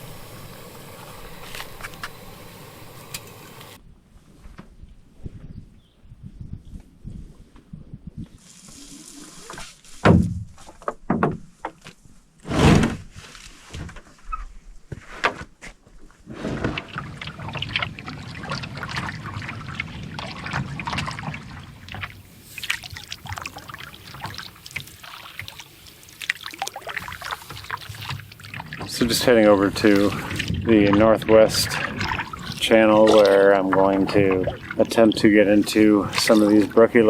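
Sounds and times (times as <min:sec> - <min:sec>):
paddle splashing water: 0:00.0 - 0:03.8, 0:16.3 - 0:37.0
knocks against a canoe: 0:10.0 - 0:11.8.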